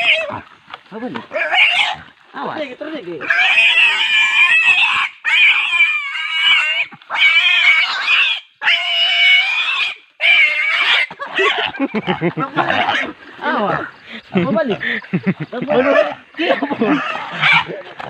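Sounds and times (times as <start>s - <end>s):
pig squealing: 0.0s - 0.5s, 1.2s - 2.1s, 3.2s - 13.9s, 15.7s - 17.9s.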